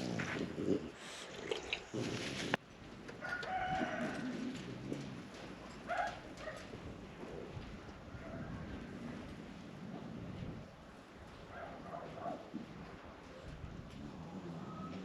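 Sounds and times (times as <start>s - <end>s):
rooster crowing: 3.2s - 4.5s.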